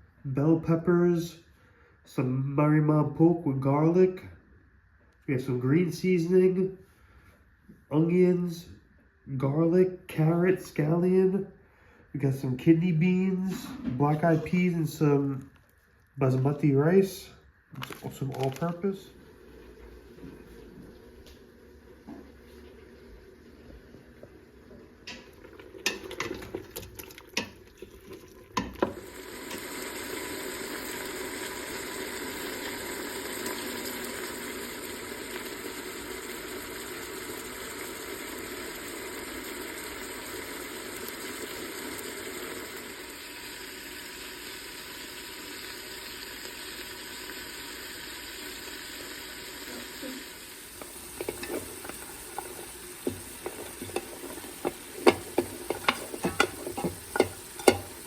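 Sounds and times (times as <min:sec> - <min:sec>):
food sizzling in hot oil: 0:24.5 - 0:58.0
clattering: 0:50.8 - 0:58.0
utensil clinks and stirring: 0:50.8 - 0:58.0.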